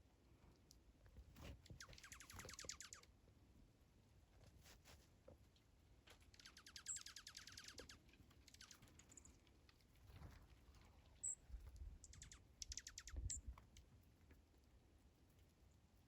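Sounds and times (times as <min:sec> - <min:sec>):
birds pecking at grain: 0:07.4 - 0:16.0.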